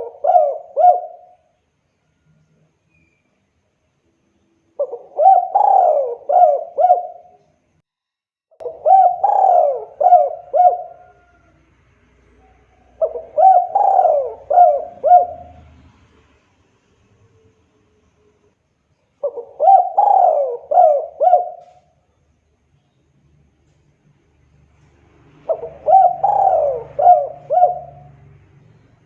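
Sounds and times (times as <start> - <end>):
dove cooing: 0.0 - 1.5, 4.8 - 7.4, 8.6 - 11.6, 12.3 - 15.8, 19.2 - 22.0, 25.4 - 28.4.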